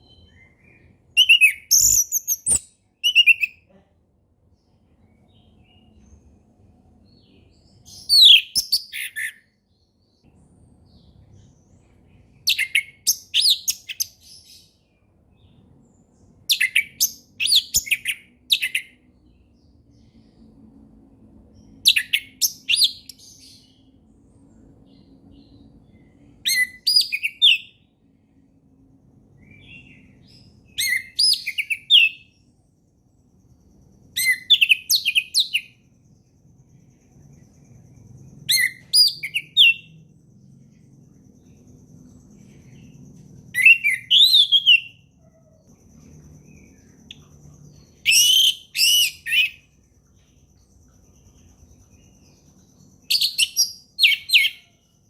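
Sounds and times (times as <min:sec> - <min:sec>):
thrush singing whistled notes: 0:00.0 - 0:03.6, 0:29.4 - 0:32.4, 0:34.1 - 0:35.9, 0:37.5 - 0:40.1, 0:43.5 - 0:45.1, 0:46.1 - 0:54.9.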